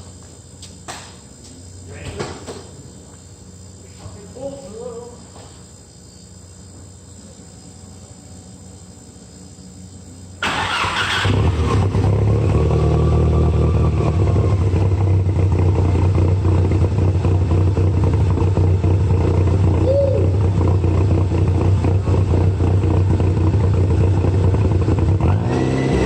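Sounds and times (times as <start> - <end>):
car engine cranking and idling: 10.4 - 26.0.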